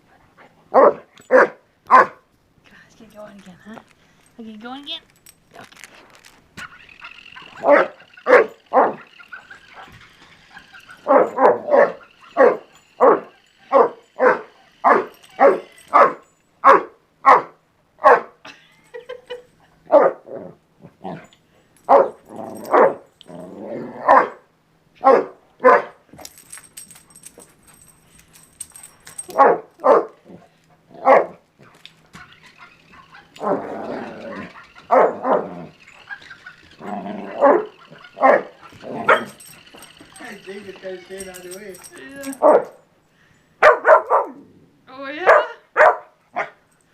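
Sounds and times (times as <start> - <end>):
puppy barking: 0.7 - 2.2, 7.0 - 18.4, 19.9 - 20.2, 21.9 - 23.0, 24.0 - 24.4, 25.0 - 26.0, 29.2 - 30.2, 31.0 - 31.4, 32.6 - 40.2, 42.2 - 42.8, 43.6 - 44.4, 45.2 - 46.7.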